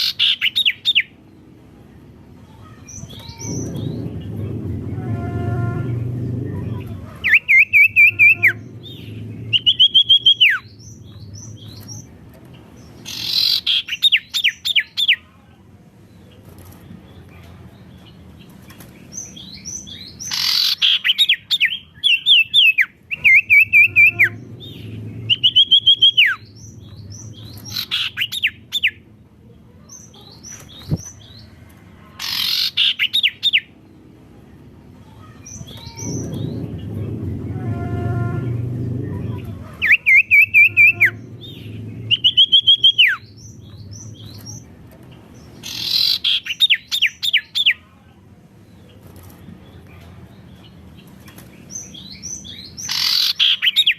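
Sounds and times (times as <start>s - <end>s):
songbird trilling: 13.0s - 15.2s, 19.2s - 29.0s, 32.2s - 33.7s, 39.8s - 44.7s, 45.4s - 47.8s, 51.8s - 53.9s.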